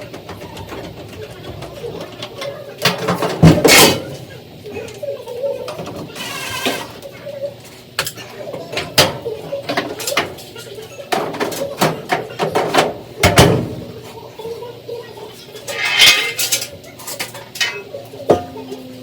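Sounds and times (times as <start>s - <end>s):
metal scraping rattle: 15.6s - 16.7s
metal parts clanking: 15.6s - 17.8s.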